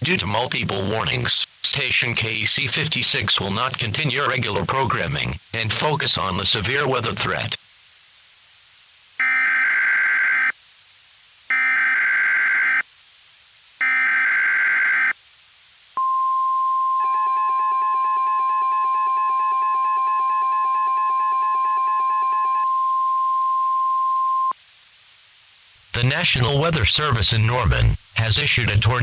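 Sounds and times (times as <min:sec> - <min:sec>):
steady high alarm tone: 0:09.2 - 0:10.5, 0:11.5 - 0:12.8, 0:13.8 - 0:15.2, 0:17.0 - 0:23.4.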